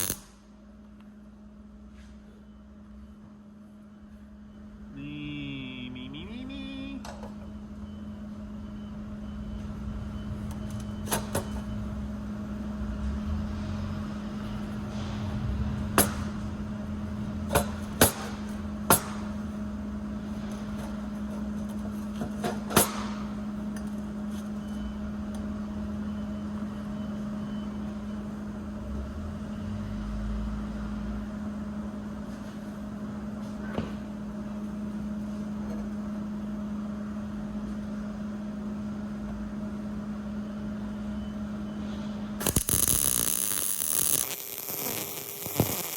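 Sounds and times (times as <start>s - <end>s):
steady electrical hum: 0.0s - 1.9s, 3.6s - 7.4s, 41.8s - 45.9s.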